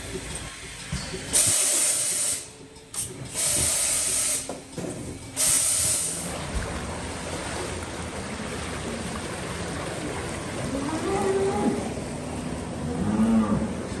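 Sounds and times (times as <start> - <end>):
low mechanical background: 0.0 - 14.0
milking machine hissing bursts: 1.3 - 4.6, 5.4 - 6.3.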